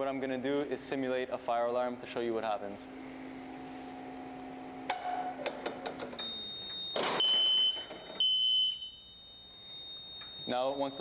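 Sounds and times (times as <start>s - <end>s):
ventilation fan hum: 0.0s - 11.0s
loud alarm tones: 6.2s - 11.0s
steady high beep: 6.2s - 11.0s.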